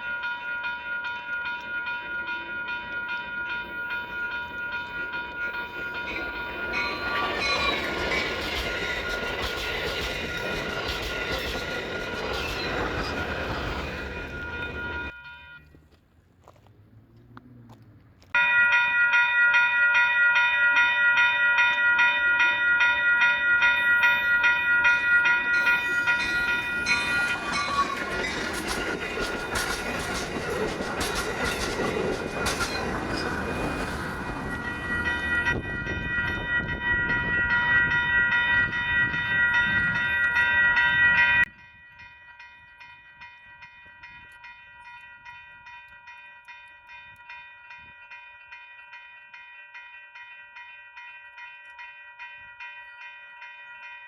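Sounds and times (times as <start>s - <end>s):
railroad crossing bells ringing: 0.0s - 15.8s, 18.2s - 54.0s
train wheels clattering on rails: 1.2s - 15.2s, 24.4s - 41.5s.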